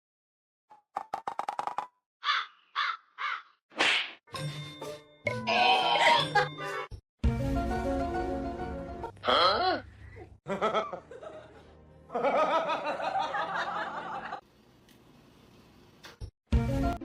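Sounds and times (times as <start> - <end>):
music: 4.3 - 9.3, 10.7 - 12.3, 16.5 - 17.0
laughter with wavering pitch: 10.4 - 14.4.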